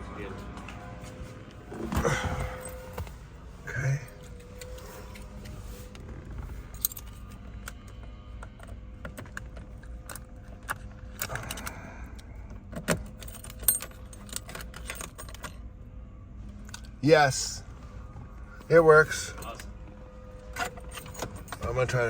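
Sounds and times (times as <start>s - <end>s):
keys jangling on a ring: 6.6s - 7.7s, 12.9s - 15.6s, 20.5s - 21.9s.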